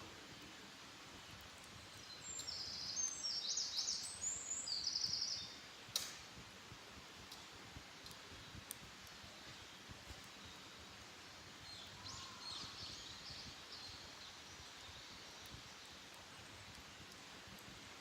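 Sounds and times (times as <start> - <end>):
quiet woodland background noise: 0.0 - 18.0
songbirds singing faintly: 0.0 - 18.0
faint clicks: 7.3 - 9.3, 14.7 - 17.7.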